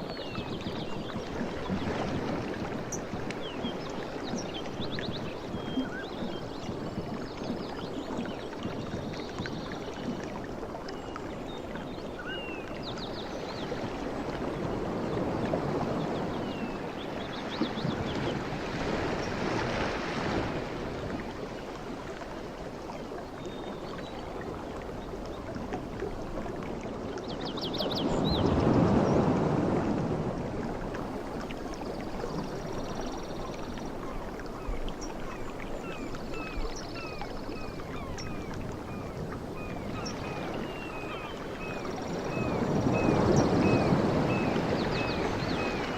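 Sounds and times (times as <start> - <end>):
sea waves washing: 27.8 - 45.9.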